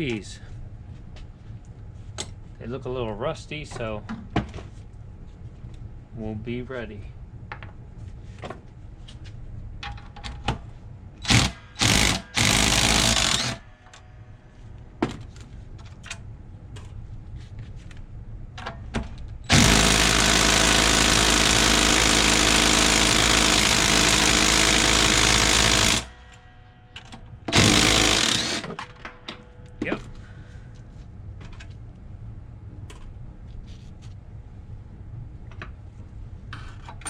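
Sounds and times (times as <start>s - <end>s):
impact wrench hammering: 11.2s - 13.7s, 19.5s - 29.5s.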